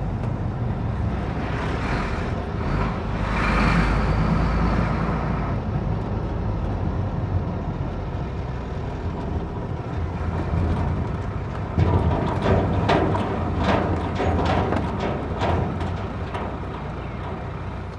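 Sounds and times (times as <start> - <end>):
truck engine and road rumble: 0.0 - 17.9
sharp metallic knocks and rattles: 10.2 - 17.9.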